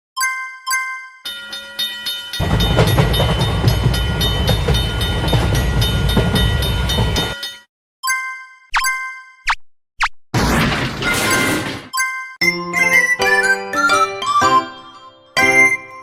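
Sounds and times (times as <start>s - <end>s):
railroad crossing bell ringing: 1.3s - 7.7s
passing train rumble: 2.4s - 7.4s.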